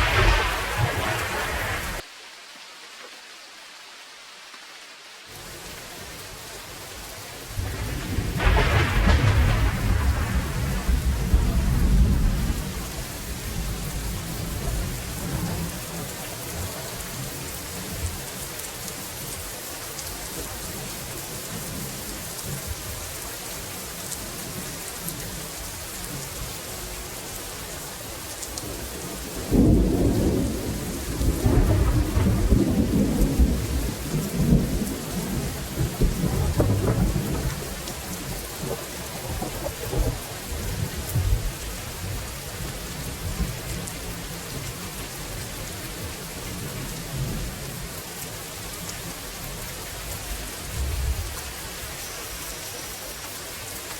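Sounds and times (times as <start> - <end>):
rolling thunder: 0.0 - 2.0, 7.5 - 17.1, 28.7 - 44.4, 50.5 - 51.9
steady rainfall: 0.0 - 53.9.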